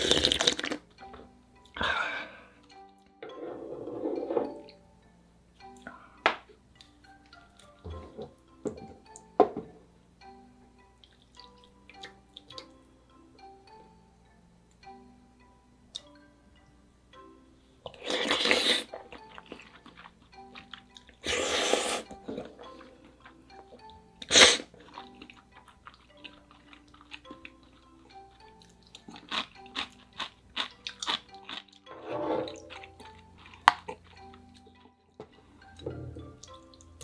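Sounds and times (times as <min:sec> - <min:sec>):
slurping noodles: 0:00.0 - 0:00.8, 0:17.9 - 0:19.8, 0:21.2 - 0:22.9, 0:24.2 - 0:25.2, 0:32.0 - 0:34.0
mallet instrument background music: 0:00.6 - 0:37.0
wet chewing: 0:17.9 - 0:31.9.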